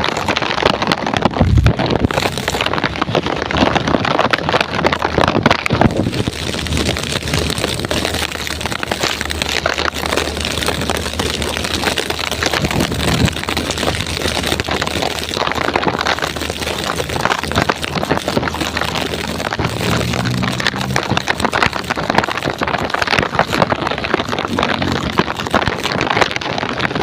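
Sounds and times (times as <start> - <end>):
heavy rain pouring: 0.0 - 27.0.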